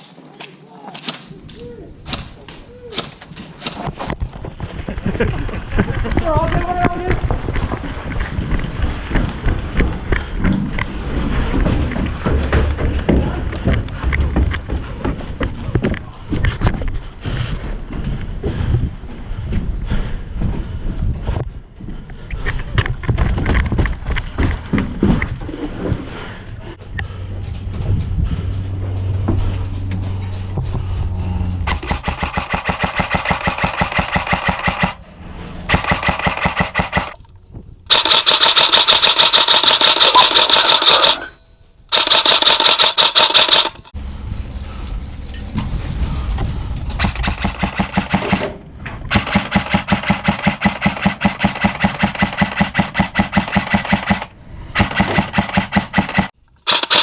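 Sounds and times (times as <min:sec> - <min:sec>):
airsoft guns firing full-auto: 0:31.7 - 0:35.0, 0:35.7 - 0:37.2, 0:37.9 - 0:41.2, 0:41.9 - 0:43.8, 0:47.0 - 0:57.0.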